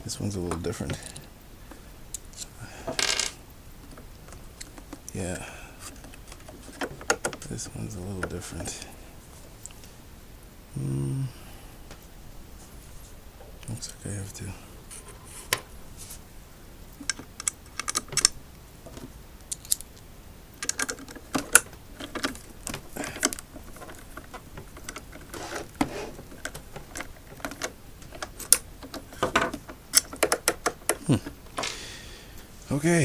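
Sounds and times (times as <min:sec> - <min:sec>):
tools clicking and knocking: 0:17.0 - 0:18.3, 0:20.6 - 0:31.7.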